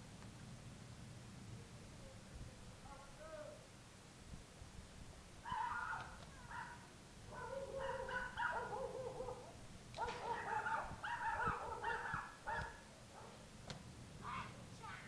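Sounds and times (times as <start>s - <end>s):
dog barking and whimpering: 5.4s - 13.4s.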